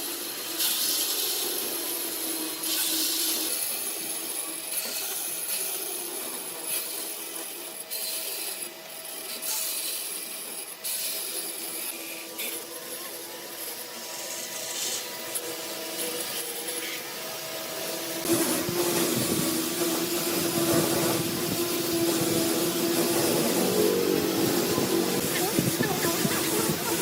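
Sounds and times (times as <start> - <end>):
motor humming: 11.4 - 27.0.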